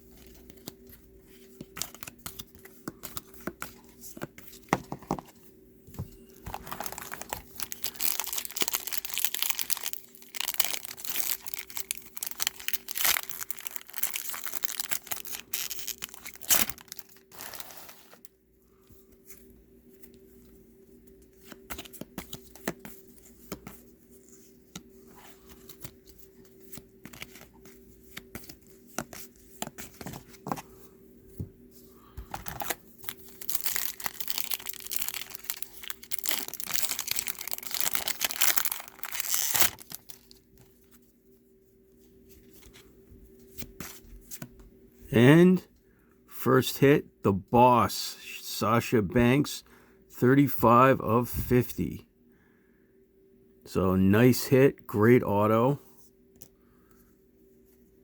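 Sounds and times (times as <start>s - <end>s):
faint steady hum: 0.0s - 58.0s
foil wrappers torn and crinkled: 6.5s - 18.2s, 32.5s - 40.4s.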